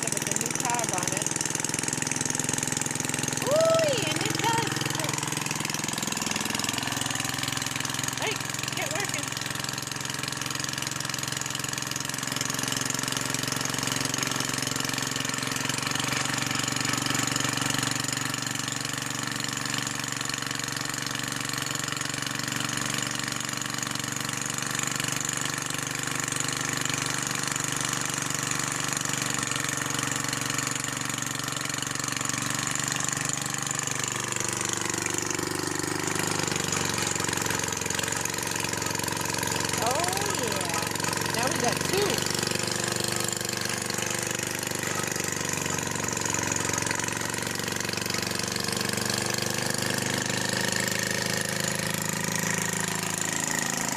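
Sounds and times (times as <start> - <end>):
small gasoline engine running: 0.0 - 53.9.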